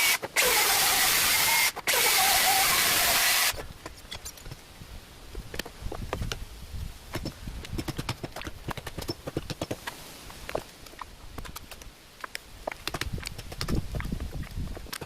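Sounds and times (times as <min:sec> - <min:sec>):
sharp clicks and knocks: 0:07.1 - 0:15.0.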